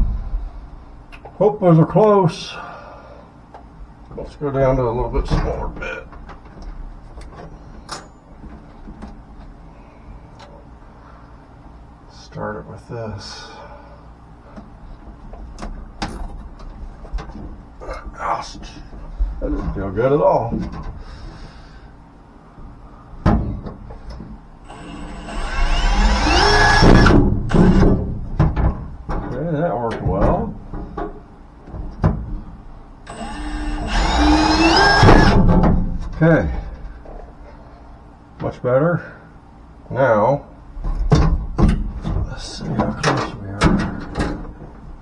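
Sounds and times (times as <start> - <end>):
drill bits clicking and knocking: 24.7 - 28.0, 33.1 - 35.6.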